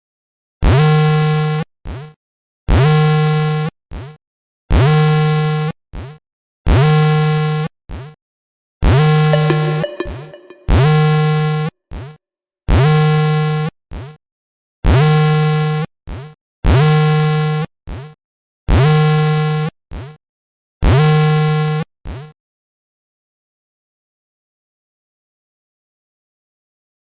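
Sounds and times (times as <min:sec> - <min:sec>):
short electronic blip: 0:09.4 - 0:11.1.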